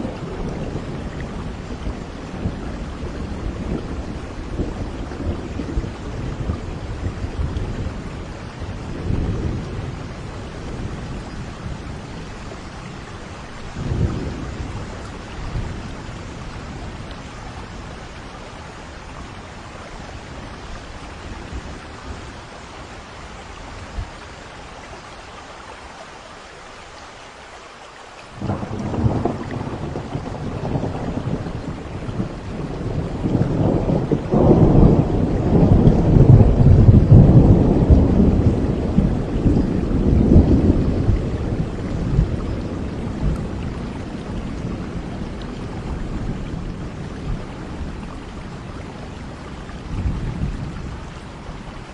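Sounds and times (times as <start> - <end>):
rolling thunder: 0.0 - 18.2, 28.4 - 51.5
steady rain: 0.0 - 51.9
loud thunderclap: 28.4 - 45.0.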